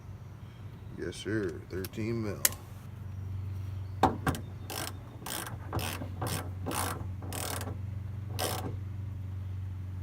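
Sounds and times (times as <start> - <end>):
ratchet wrench rasping: 4.1 - 8.8.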